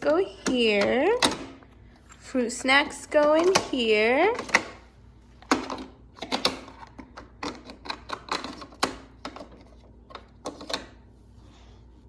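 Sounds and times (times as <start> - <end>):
plastic toys clicking and clattering: 5.5 - 10.9.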